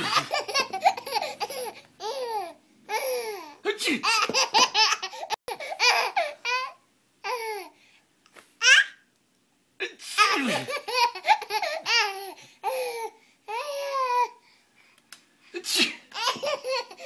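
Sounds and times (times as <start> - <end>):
baby laughing: 0.0 - 7.7, 10.2 - 14.4, 16.1 - 17.0.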